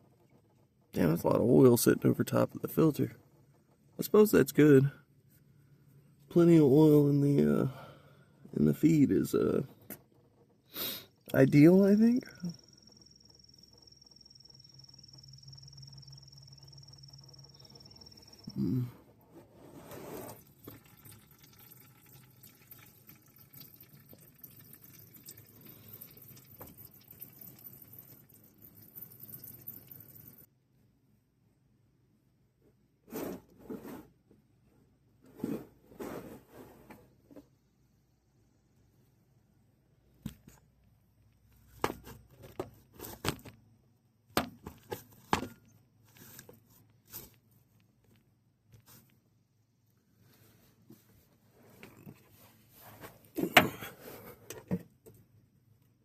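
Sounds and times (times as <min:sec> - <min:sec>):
oil dripping: 0:20.4 - 0:30.5
hand tools and metal parts clattering: 0:51.8 - 0:55.2.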